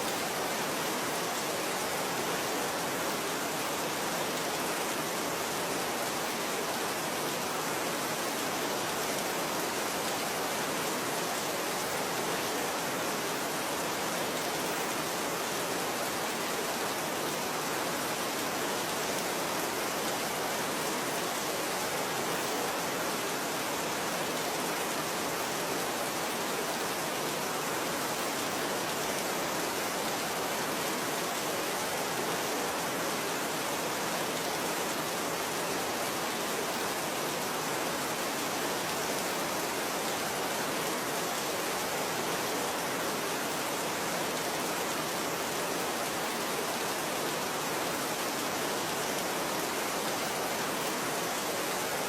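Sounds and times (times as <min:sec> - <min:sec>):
steady rain falling: 0:00.0 - 0:52.0.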